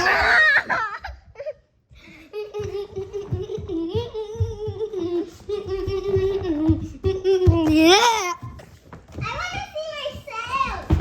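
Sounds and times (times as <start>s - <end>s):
child laughing: 0.0s - 8.4s.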